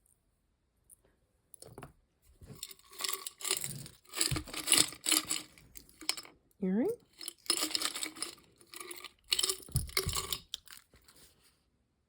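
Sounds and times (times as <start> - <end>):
jewelry clinking and jangling: 2.5 - 6.3, 6.9 - 11.0.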